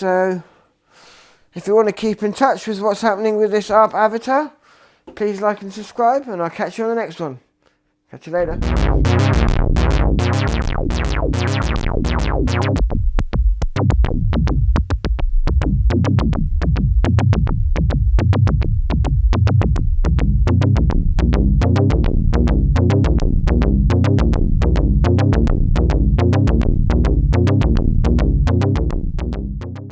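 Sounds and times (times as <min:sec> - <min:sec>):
electronic music with drum-machine beat: 0:08.4 - 0:29.9.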